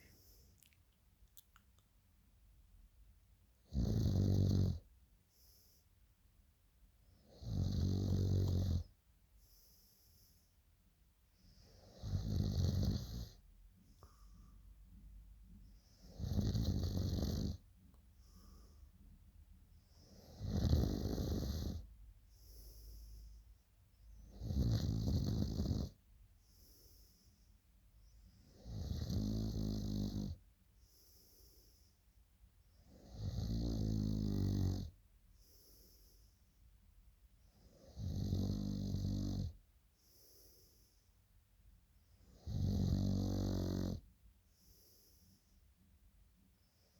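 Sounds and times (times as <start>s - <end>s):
woman snoring loudly: 3.7s - 4.8s, 7.4s - 8.8s, 12.0s - 13.3s, 16.2s - 17.6s, 20.3s - 21.8s, 24.4s - 25.9s, 28.6s - 30.4s, 38.0s - 39.5s, 42.4s - 44.0s
faint breathing: 9.4s - 10.7s, 13.8s - 16.2s, 18.0s - 20.4s, 22.2s - 24.2s, 26.4s - 28.4s, 30.8s - 32.2s, 35.3s - 36.7s, 39.9s - 41.3s, 44.4s - 45.8s.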